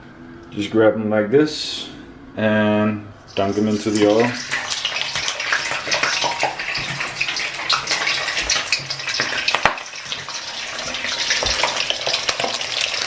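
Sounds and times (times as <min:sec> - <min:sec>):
fish deep-frying in oil: 0:03.3 - 0:13.0.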